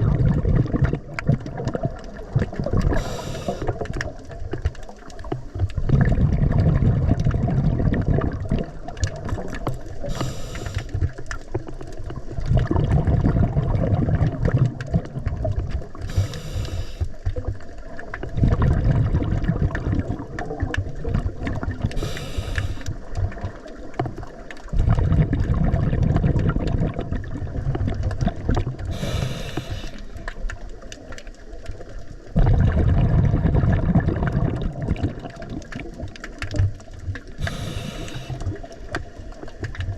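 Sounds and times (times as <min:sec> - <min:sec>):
exhaled bubbles burbling: 0:00.0 - 0:39.9
diver inhaling through regulator: 0:02.8 - 0:03.9, 0:10.0 - 0:11.1, 0:16.0 - 0:17.2, 0:21.9 - 0:23.1, 0:28.9 - 0:30.3, 0:37.4 - 0:38.9.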